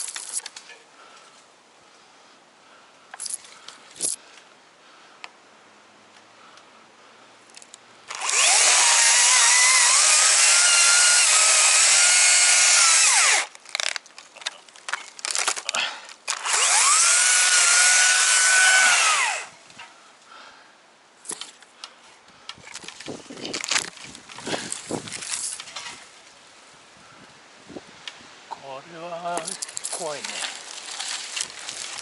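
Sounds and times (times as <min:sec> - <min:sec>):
chainsaw revving: 0:08.1 - 0:13.5, 0:16.3 - 0:19.5.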